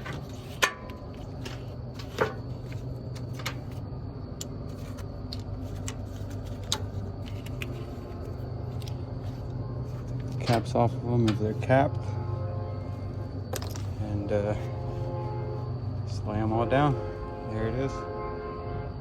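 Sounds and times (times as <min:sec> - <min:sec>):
battery terminals clicking and clinking: 0:00.0 - 0:09.0, 0:13.5 - 0:14.1.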